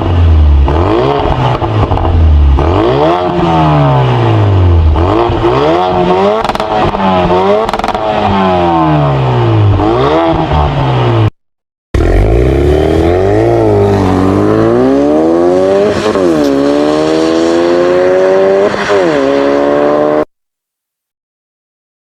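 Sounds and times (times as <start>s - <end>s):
car engine accelerating hard: 12.0s - 20.3s.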